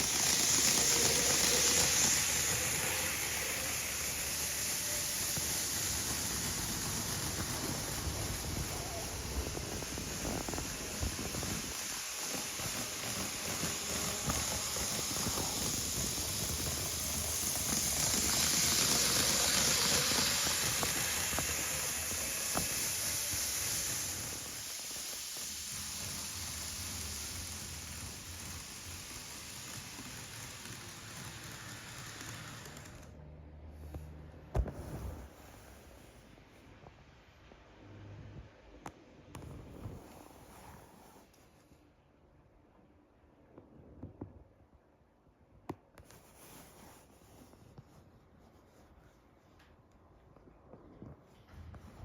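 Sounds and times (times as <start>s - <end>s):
train rushing past: 0.0s - 33.1s.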